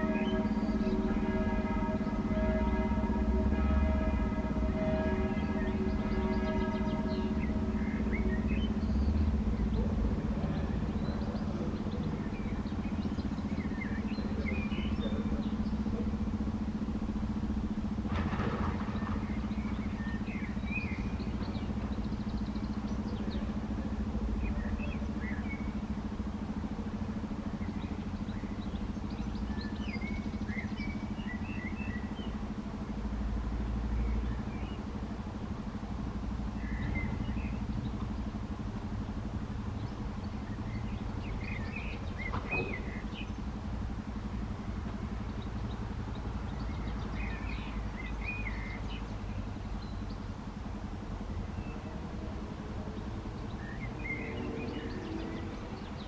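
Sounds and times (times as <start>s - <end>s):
traffic rumble: 0.0s - 56.0s
bird chirps: 5.6s - 16.2s.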